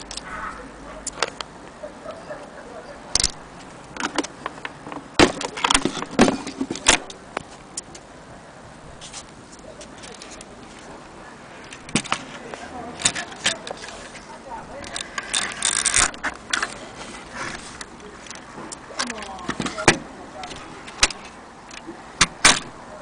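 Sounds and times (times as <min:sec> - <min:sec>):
sharp clicks and knocks: 0:03.1 - 0:08.0, 0:17.8 - 0:22.8.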